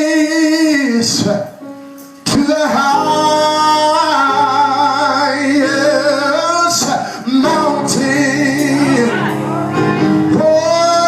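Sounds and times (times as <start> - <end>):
organ chords: 0.0 - 11.0
choir singing gospel melody: 2.3 - 11.0.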